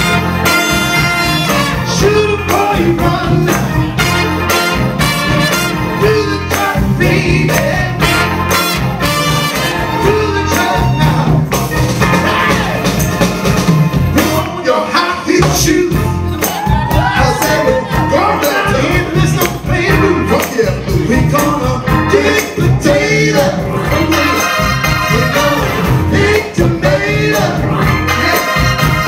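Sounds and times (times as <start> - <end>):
soul band playing: 0.0 - 29.0
person singing: 1.9 - 3.9, 9.6 - 11.4, 14.2 - 29.0.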